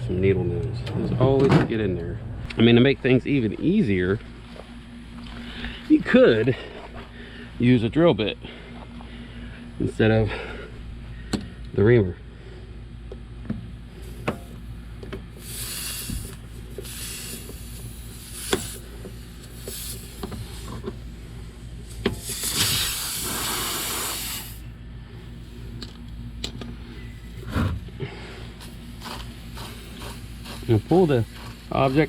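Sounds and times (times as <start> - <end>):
air hissing from tire: 13.9 - 14.7, 15.3 - 25.8, 27.3 - 32.0.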